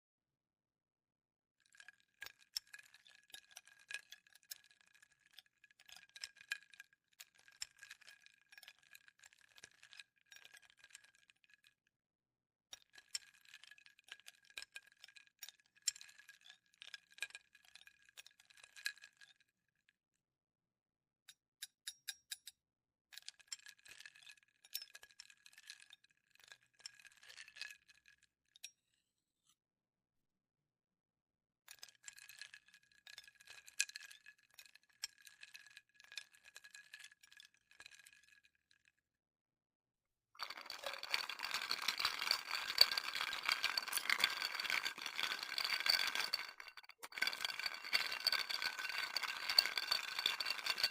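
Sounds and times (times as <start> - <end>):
ice cubes clinking in glass: 40.4 - 50.9.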